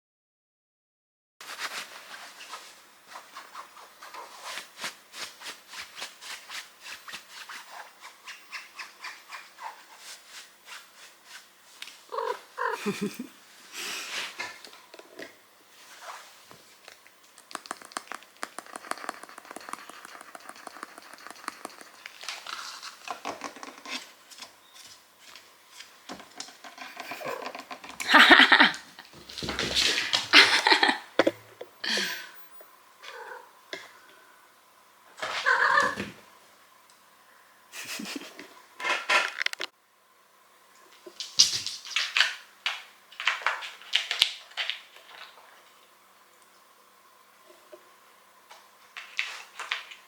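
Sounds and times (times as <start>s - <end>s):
cat meowing: 12.1s - 13.0s, 35.3s - 36.1s
cat purring: 12.1s - 13.3s, 17.5s - 23.8s, 26.8s - 28.3s, 33.0s - 33.6s.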